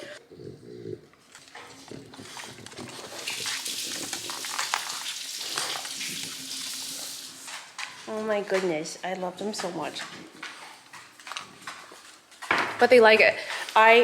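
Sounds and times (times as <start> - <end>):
dogs chewing and licking: 1.1 - 6.7.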